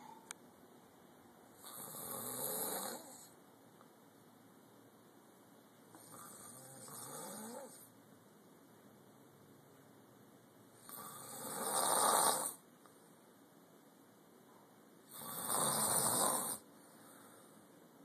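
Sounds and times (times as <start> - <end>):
snoring: 1.6 - 3.4, 6.0 - 7.9, 10.8 - 12.6, 15.1 - 16.6.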